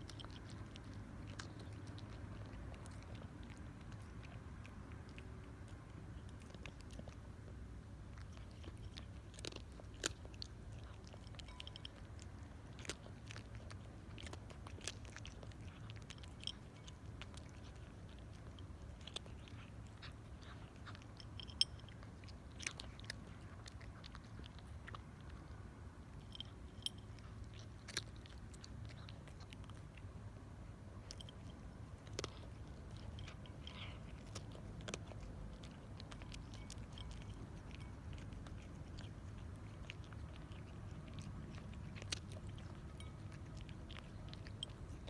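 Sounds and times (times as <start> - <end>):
cat crunching dry kibble: 0.0 - 45.0
low steady hum: 0.0 - 45.0.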